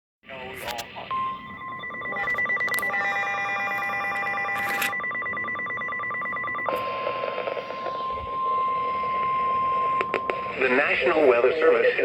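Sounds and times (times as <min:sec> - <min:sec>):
radio hiss: 0:00.3 - 0:01.2, 0:06.7 - 0:12.0
steady electronic alert tone: 0:01.1 - 0:11.4
rapid pulsing beeps: 0:01.1 - 0:12.0.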